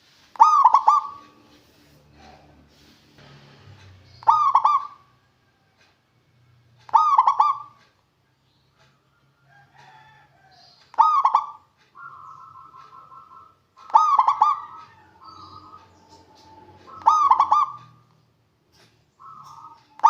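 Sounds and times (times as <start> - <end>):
faint bird calls: 0.3 - 3.0, 3.8 - 9.2, 9.8 - 20.0
dove cooing: 0.4 - 2.6, 4.1 - 5.2, 6.9 - 7.8, 11.0 - 18.1, 18.8 - 20.0.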